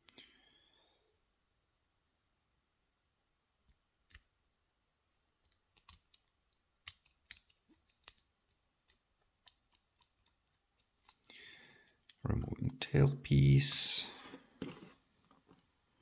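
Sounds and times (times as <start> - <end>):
metal tools clicking on lock: 5.4 - 8.2, 8.9 - 12.2.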